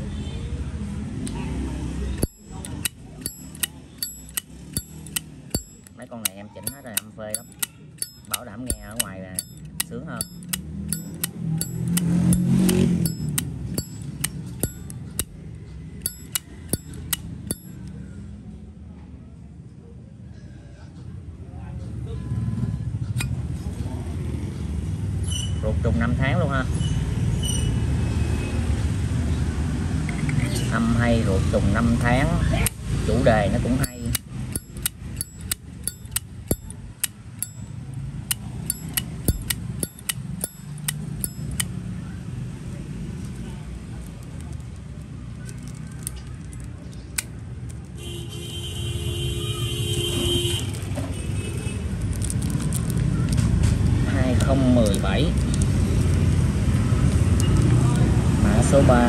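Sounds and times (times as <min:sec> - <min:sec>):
lighter lid clicking open and shut: 0:02.2 - 0:15.3.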